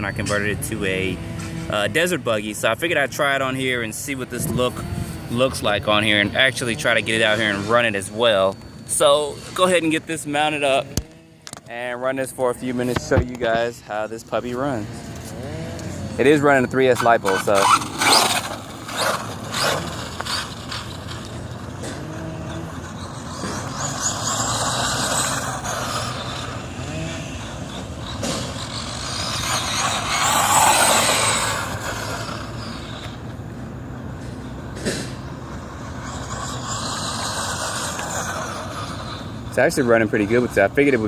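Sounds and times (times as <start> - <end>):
rc truck motor whining: 14.6 - 41.0.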